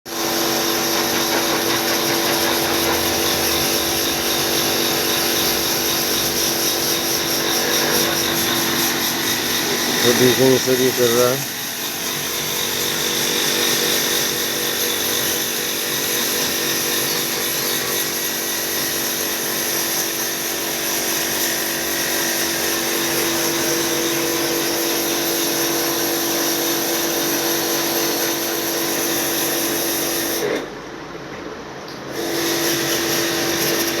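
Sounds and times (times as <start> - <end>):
machine motor whirring: 1.5 - 15.5.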